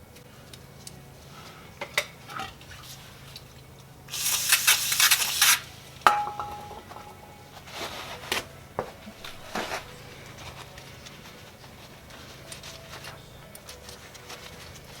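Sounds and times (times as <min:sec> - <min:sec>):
rummaging clatter: 0:06.1 - 0:15.0
metal tools clinking and rattling: 0:09.2 - 0:11.2.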